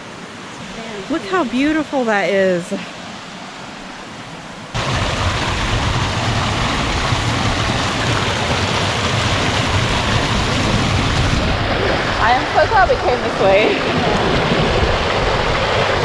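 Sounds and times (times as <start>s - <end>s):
waterfall rushing water: 4.7s - 16.0s.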